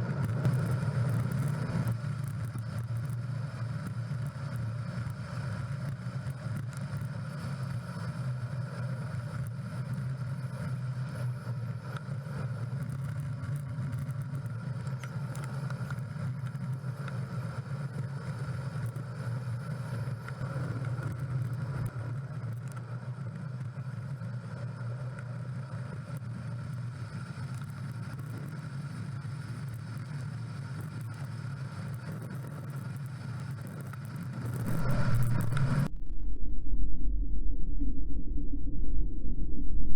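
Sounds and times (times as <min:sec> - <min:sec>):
wind and road noise: 0:34.6 - 0:37.0.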